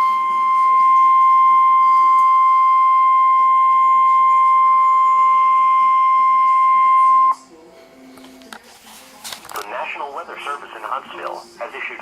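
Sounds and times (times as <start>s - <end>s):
steady high alarm tone: 0.0s - 7.5s
radio hiss: 9.6s - 12.0s.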